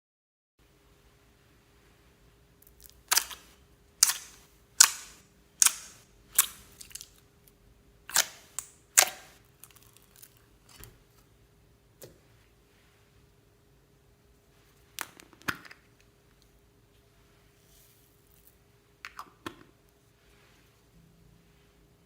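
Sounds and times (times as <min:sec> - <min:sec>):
faint steady hum: 0:00.6 - 0:22.0
slime popping and clicking: 0:02.8 - 0:03.4, 0:04.0 - 0:07.1, 0:08.1 - 0:09.9.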